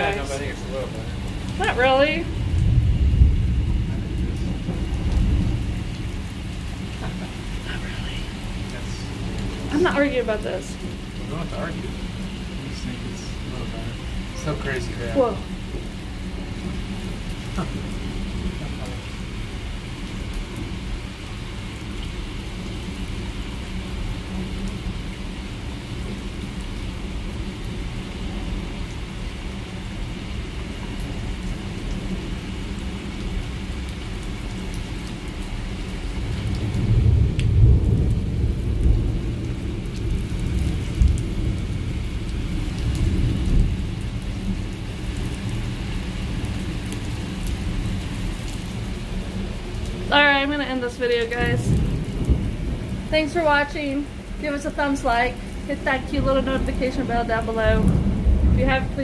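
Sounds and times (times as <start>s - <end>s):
heavy rain pouring: 0.0s - 59.0s
thunder rumbling: 0.0s - 59.0s.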